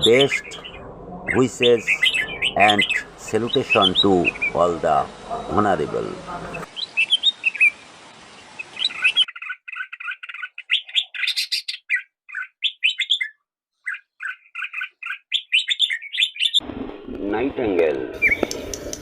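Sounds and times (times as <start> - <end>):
bird calls: 0.0 - 16.6, 18.2 - 19.0
songbird chirping: 0.0 - 16.6, 18.2 - 19.0
recording hiss: 1.4 - 9.2.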